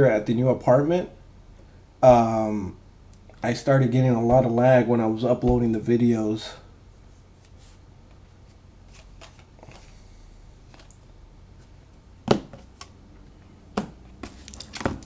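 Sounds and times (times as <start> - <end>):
cards rustling on a table: 7.2 - 10.0, 14.2 - 15.0.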